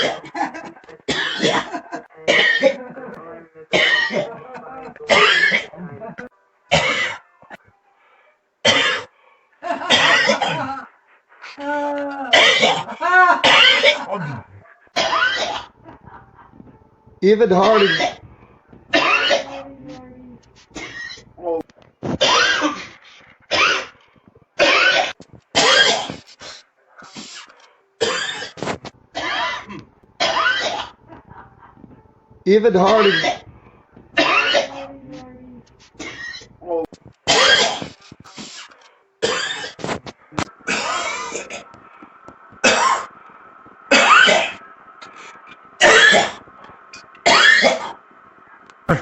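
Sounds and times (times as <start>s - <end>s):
person coughing hard: 0.0s - 2.9s, 3.7s - 6.0s, 6.7s - 7.2s, 8.7s - 9.1s, 9.8s - 10.8s, 12.3s - 14.4s, 15.0s - 15.8s, 17.6s - 18.2s, 18.9s - 20.0s, 22.2s - 22.9s, 24.6s - 26.2s, 28.0s - 31.0s, 32.8s - 33.5s, 34.2s - 35.0s, 37.3s - 38.0s, 39.2s - 40.0s, 40.7s - 41.7s, 42.6s - 43.1s, 43.9s - 44.6s, 45.8s - 46.4s, 47.2s - 48.0s
person coughing: 0.0s - 3.0s, 3.8s - 7.2s, 9.8s - 10.8s, 12.3s - 14.4s, 18.9s - 21.2s, 32.8s - 33.5s, 34.2s - 35.2s, 47.3s - 48.0s.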